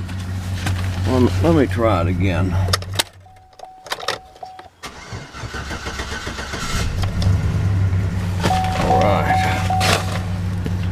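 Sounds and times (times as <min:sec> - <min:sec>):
car engine cranking and idling: 0:00.0 - 0:10.9
dashboard warning chime beeping: 0:03.2 - 0:04.8, 0:08.5 - 0:10.3.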